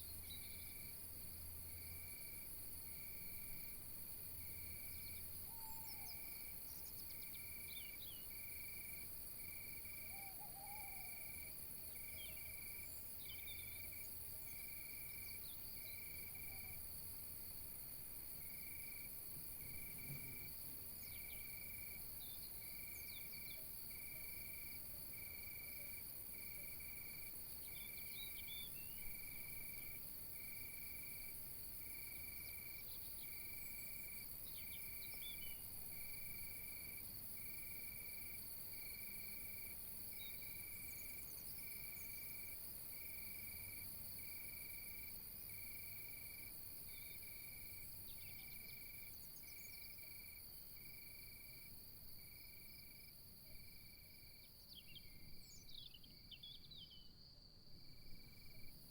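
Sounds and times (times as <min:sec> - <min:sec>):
cricket chirping: 0:00.0 - 0:58.9
faint bird chirps: 0:04.9 - 0:08.3, 0:10.0 - 0:11.3, 0:15.2 - 0:16.8, 0:27.6 - 0:29.1, 0:32.8 - 0:35.7, 0:48.0 - 0:50.0, 0:54.3 - 0:57.2
insects trilling: 0:32.0 - 0:58.9.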